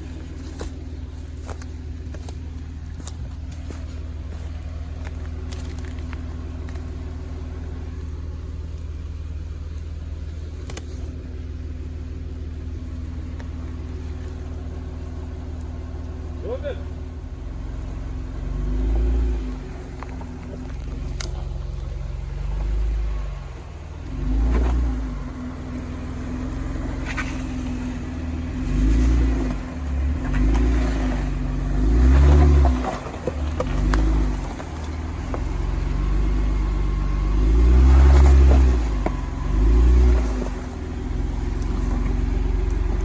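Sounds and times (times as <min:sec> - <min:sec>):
tires knocking on rock: 0:26.6 - 0:36.7, 0:37.3 - 0:43.0.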